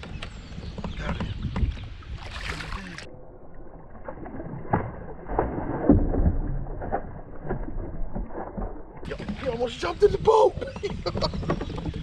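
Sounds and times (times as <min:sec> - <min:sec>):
water splash: 0:02.1 - 0:09.6
fish thrashing: 0:04.0 - 0:09.7.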